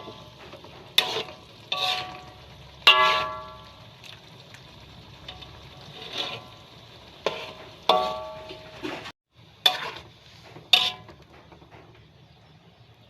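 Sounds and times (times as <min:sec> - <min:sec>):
metal utensil clanking on pot: 0:00.0 - 0:04.2, 0:05.2 - 0:06.6, 0:07.2 - 0:11.9
soft simmering: 0:00.0 - 0:13.0.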